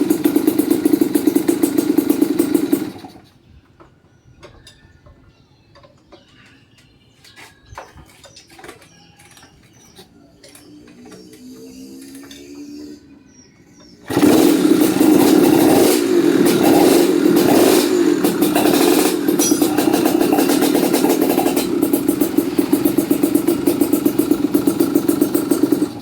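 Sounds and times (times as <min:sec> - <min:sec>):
motorcycle engine revving and running: 0:00.0 - 0:03.2, 0:10.6 - 0:13.2, 0:13.9 - 0:26.0
electric starter: 0:00.0 - 0:03.3, 0:13.9 - 0:26.0.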